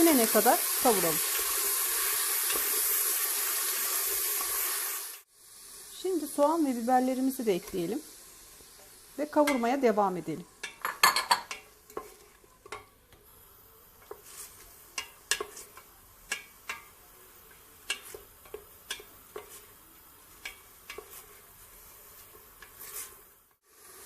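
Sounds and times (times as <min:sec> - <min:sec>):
meat sizzling in oil: 0:00.0 - 0:24.0
utensil knocking and scraping pot: 0:10.6 - 0:13.3, 0:14.0 - 0:23.3.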